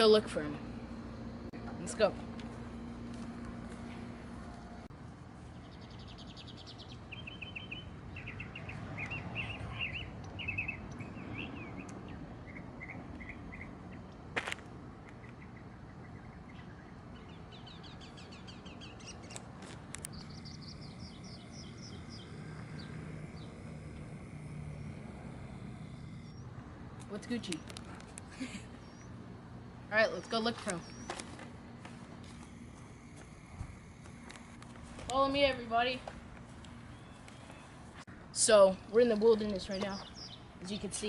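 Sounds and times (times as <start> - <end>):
outdoor background noise: 0.0 - 41.0
songbirds chirping and singing: 5.5 - 14.2, 15.2 - 25.0, 36.7 - 38.0, 38.8 - 41.0.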